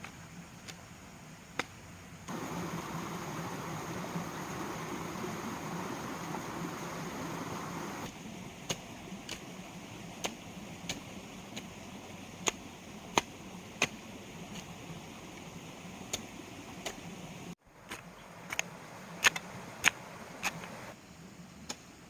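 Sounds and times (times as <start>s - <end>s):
low steady hiss: 0.0s - 22.0s.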